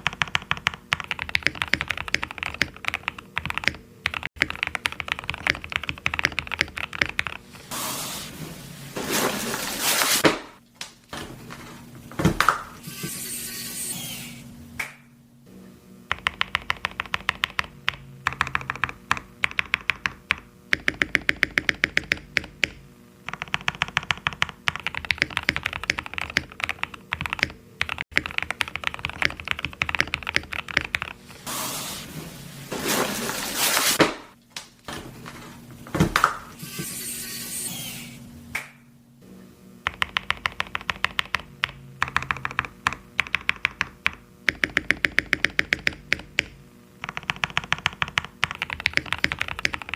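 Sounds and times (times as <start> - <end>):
typing on mechanical keyboard: 0.0 - 7.4, 16.1 - 31.2, 39.9 - 49.9.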